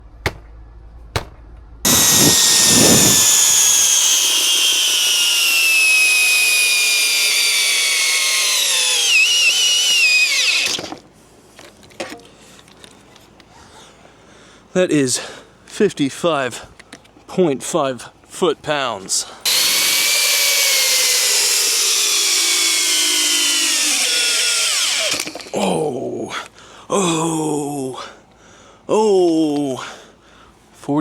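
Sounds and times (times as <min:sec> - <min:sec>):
hammer drill motor whine: 0:01.9 - 0:11.0, 0:19.5 - 0:25.6.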